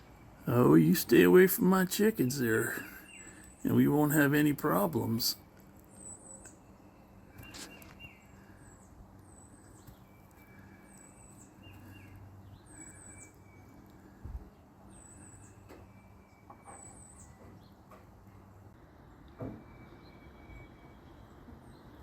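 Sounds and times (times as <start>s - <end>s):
small bird chirping: 5.9s - 13.8s.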